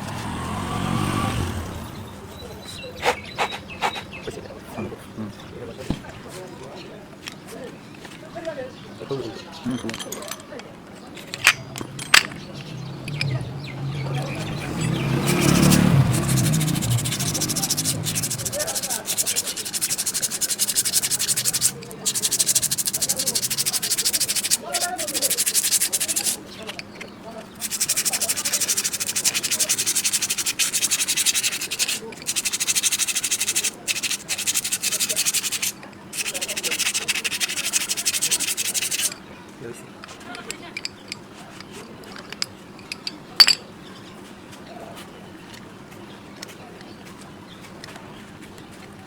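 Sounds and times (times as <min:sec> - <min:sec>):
abrasive rasping on brake shoe: 0:14.0 - 0:26.4, 0:27.6 - 0:39.2
sanding strokes: 0:14.2 - 0:26.4, 0:27.6 - 0:39.2.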